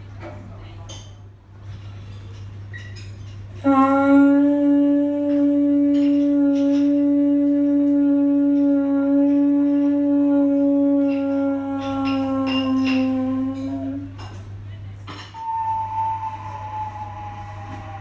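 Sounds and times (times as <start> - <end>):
wind instrument long held note: 3.6 - 14.3, 15.4 - 18.0.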